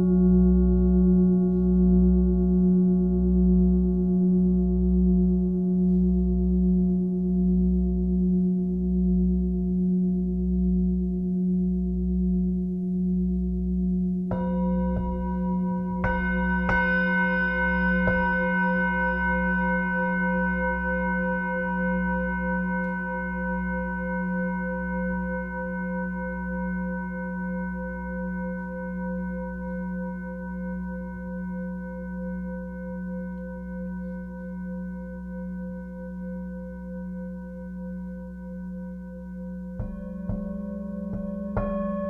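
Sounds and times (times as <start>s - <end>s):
singing bowl ringing: 14.3s - 42.0s.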